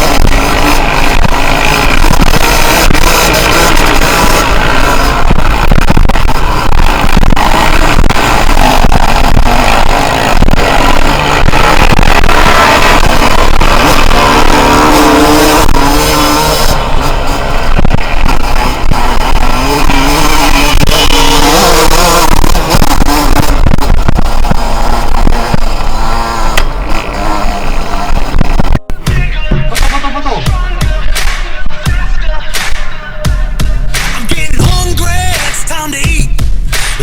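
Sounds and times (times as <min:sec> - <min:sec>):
two-stroke motorcycle engine revving: 0:00.0 - 0:37.0
music: 0:28.8 - 0:37.0.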